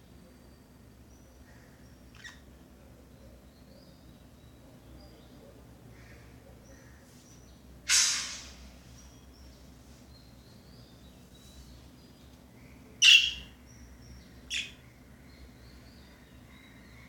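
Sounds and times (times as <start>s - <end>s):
soft bird chirping and warbling: 0.0s - 5.4s, 6.6s - 17.0s
budgerigar harsh calls: 2.1s - 2.5s, 13.0s - 13.6s, 14.5s - 14.8s.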